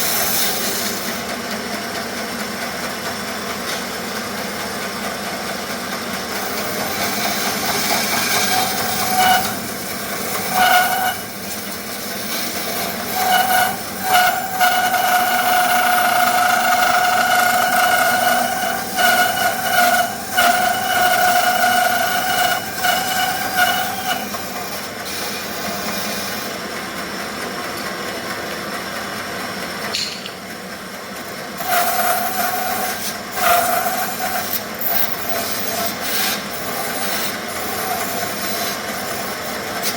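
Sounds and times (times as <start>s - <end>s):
band saw blade whine: 0.0s - 1.5s, 5.4s - 26.8s, 31.2s - 39.9s
band saw running: 0.0s - 39.9s.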